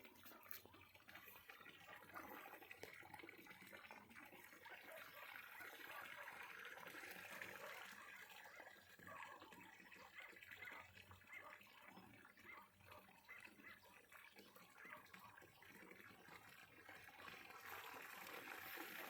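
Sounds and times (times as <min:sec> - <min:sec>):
water gently lapping: 0:00.0 - 0:19.0
fish splashing and sucking: 0:15.7 - 0:19.0.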